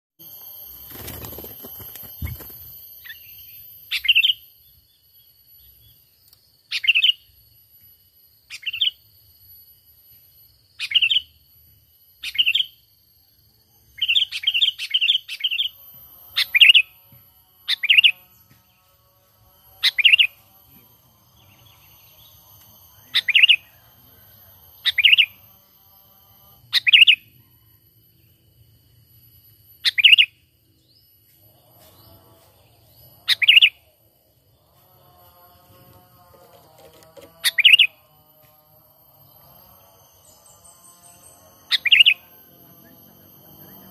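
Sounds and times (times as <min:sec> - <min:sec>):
bird chirping calls: 0:21.3 - 0:25.5, 0:40.2 - 0:43.9.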